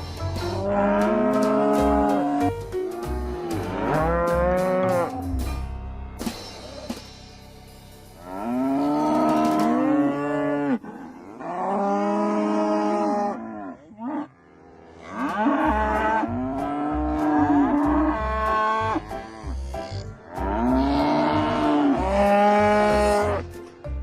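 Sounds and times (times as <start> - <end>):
cattle mooing: 3.4 - 5.2, 8.2 - 23.4.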